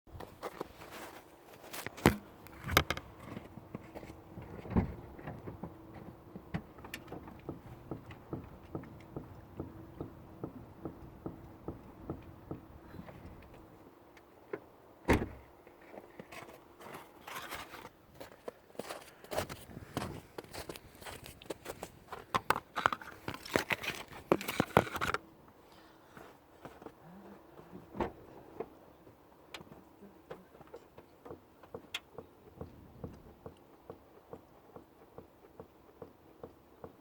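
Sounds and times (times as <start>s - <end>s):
faint steady hum: 0.1s - 37.0s
suspension knocks and clicks: 2.0s - 13.7s, 27.6s - 37.0s.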